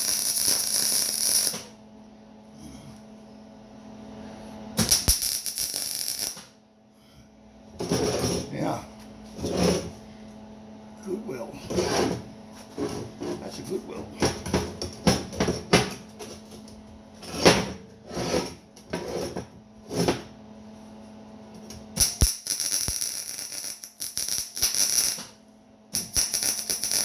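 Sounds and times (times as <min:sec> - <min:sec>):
faint steady hum: 0:00.0 - 0:17.3.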